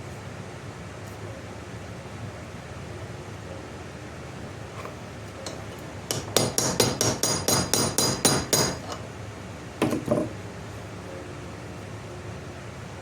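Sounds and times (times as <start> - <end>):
hammer ringing on metal pin: 5.4 - 9.0.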